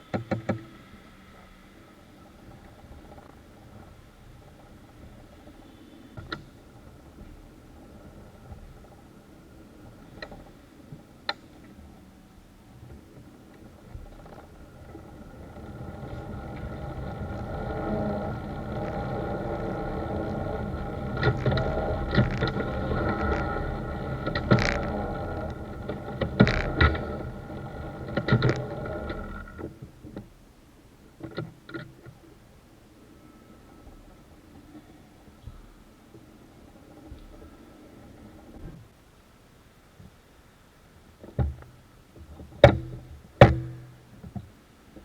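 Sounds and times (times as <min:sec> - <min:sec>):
vehicle engine running: 0:14.9 - 0:28.8
knocks: 0:42.6 - 0:43.9.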